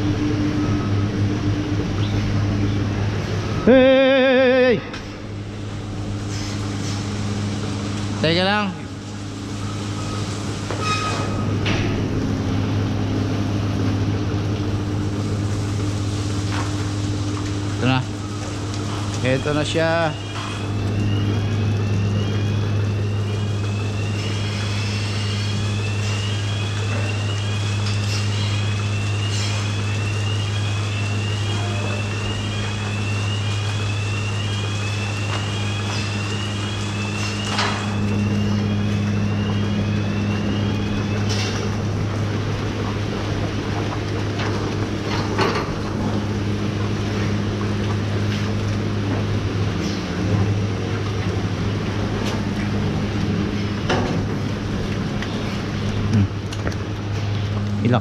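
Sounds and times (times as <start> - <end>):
machinery electric hum: 0.0 - 58.0
rising squeak: 9.4 - 13.3, 17.8 - 48.4.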